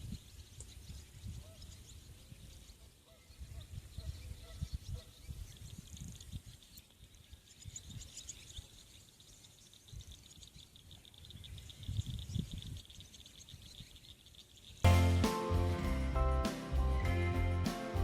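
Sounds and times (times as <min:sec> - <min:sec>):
small birds chirping: 0:00.0 - 0:18.0
dense high chirring: 0:14.9 - 0:18.0.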